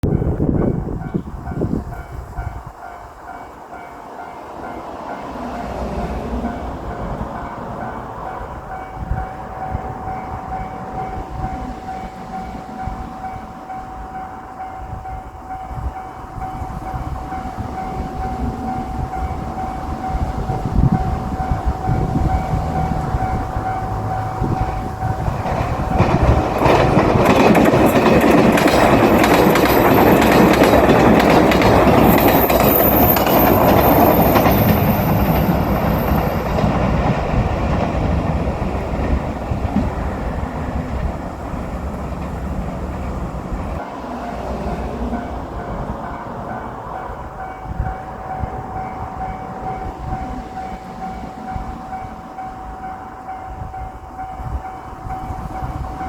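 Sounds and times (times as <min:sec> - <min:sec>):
diesel train passing: 0:00.0 - 0:56.0
train wheels clacking over rail joints: 0:16.4 - 0:53.4.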